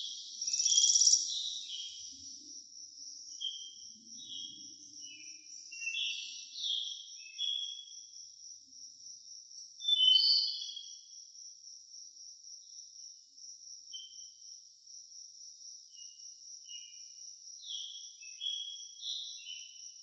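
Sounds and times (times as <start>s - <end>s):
bird chirps: 0.0s - 2.5s, 3.3s - 8.1s, 9.8s - 11.0s, 17.6s - 19.9s
insects trilling: 0.0s - 20.0s.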